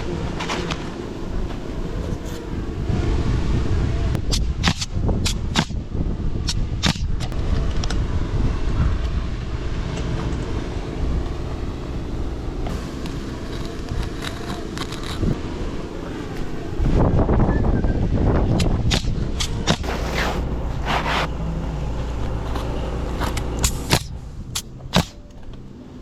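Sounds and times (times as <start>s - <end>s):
wind rumbling on microphone: 0.0s - 25.0s.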